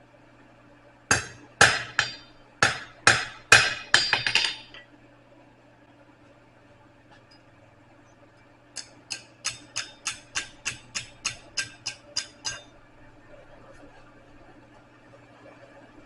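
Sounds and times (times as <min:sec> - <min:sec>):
hammer tapping on metal: 0:01.1 - 0:04.8, 0:08.8 - 0:12.7.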